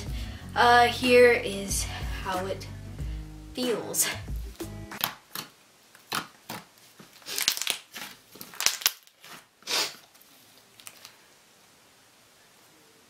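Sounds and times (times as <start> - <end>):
slime squishing crackly: 5.0 - 9.5.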